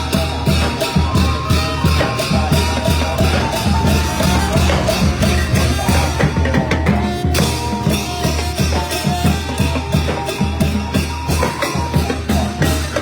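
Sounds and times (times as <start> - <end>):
brass horns holding notes: 0.0 - 8.0
drums and cymbals beat: 0.0 - 13.0.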